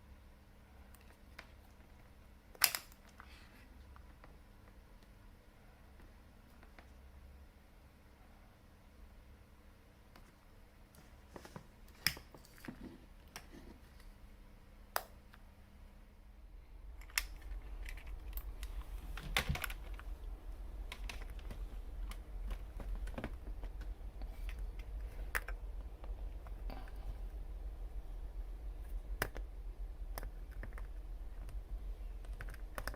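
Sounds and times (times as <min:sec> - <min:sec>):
low rumble: 0:16.0 - 0:32.9
small hard parts clicking: 0:16.9 - 0:27.4, 0:28.8 - 0:32.9.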